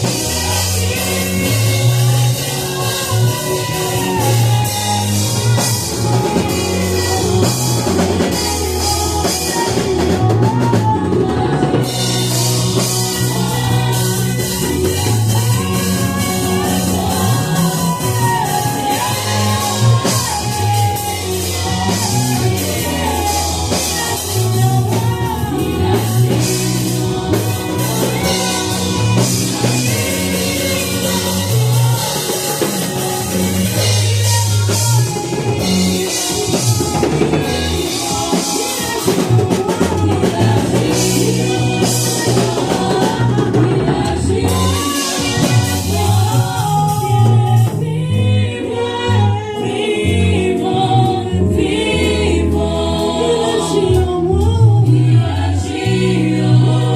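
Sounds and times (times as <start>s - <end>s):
people singing: 0.0s - 56.9s
worship band playing: 0.0s - 56.9s.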